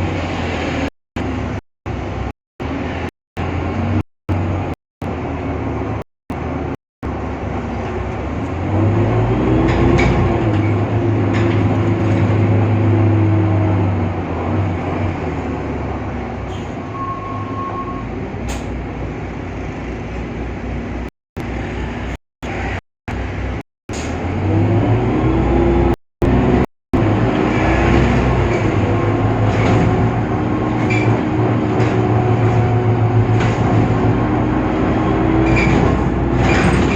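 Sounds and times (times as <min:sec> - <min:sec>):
bus engine: 0:00.0 - 0:36.9
short beep: 0:16.9 - 0:18.1.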